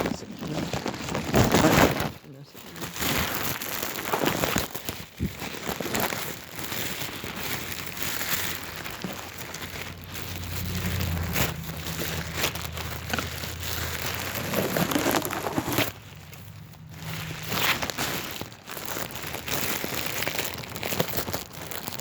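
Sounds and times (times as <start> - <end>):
bubble wrap crinkling: 0.0 - 22.0
low hum: 8.7 - 17.6.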